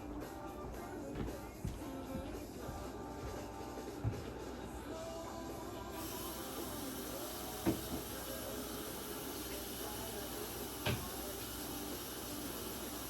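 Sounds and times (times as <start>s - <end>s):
steady hiss: 5.6s - 13.0s.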